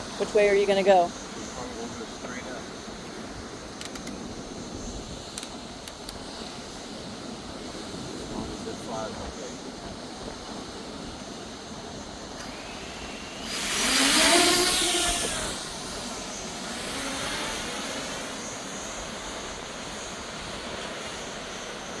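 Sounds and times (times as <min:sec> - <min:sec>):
drone motors whining: 0:12.3 - 0:20.8.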